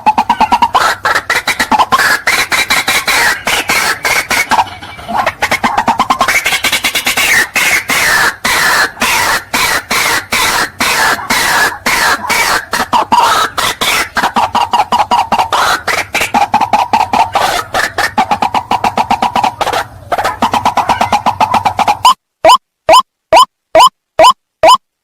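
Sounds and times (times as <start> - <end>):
bird calling with harsh notes: 0.0 - 24.8.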